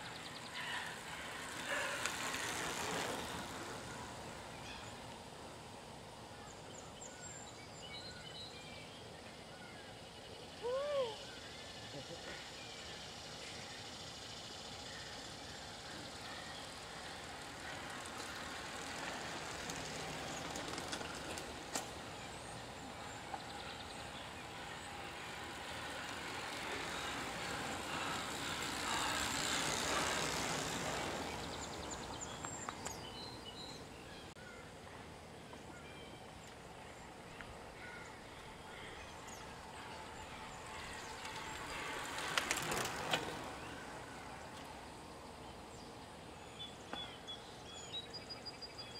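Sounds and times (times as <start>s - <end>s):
vehicle passing by: 0.0s - 5.0s, 13.9s - 34.0s, 38.8s - 45.8s.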